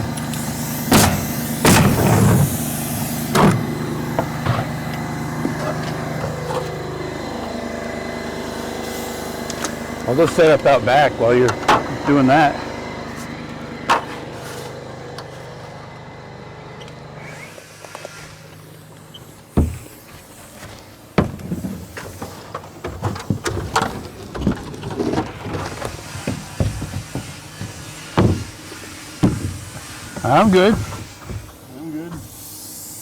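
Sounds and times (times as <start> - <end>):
motor hum: 0.0 - 33.0
clattering knocks from building work: 19.6 - 19.9, 21.2 - 32.3.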